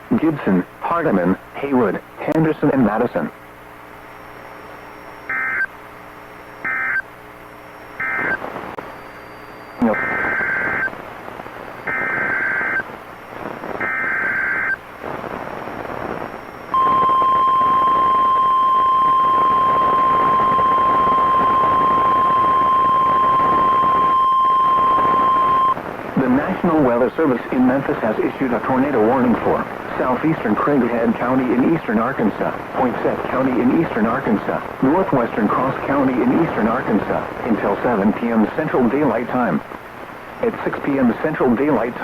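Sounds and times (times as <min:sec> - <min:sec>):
radio static hiss: 0:00.0 - 0:42.0
warbling data bursts: 0:05.1 - 0:05.7, 0:07.8 - 0:11.0, 0:11.8 - 0:12.8, 0:13.7 - 0:14.8, 0:16.3 - 0:25.8.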